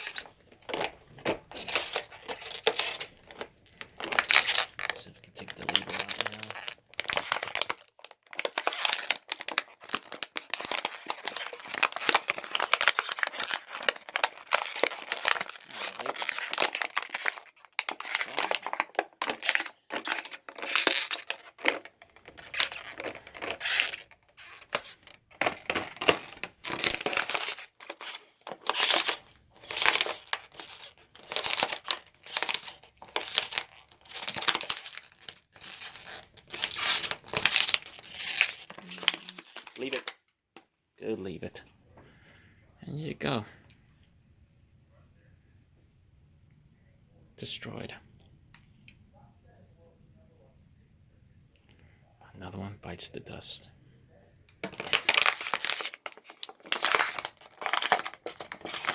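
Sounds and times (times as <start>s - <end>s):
dog chewing plastic bottle: 0.0s - 40.0s.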